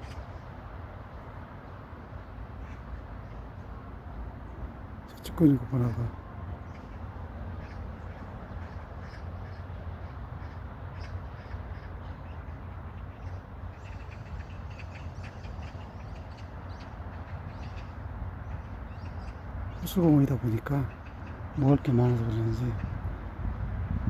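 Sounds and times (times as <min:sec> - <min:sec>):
birds chirping: 0:00.0 - 0:24.0
wind rumble on microphone: 0:20.9 - 0:24.0.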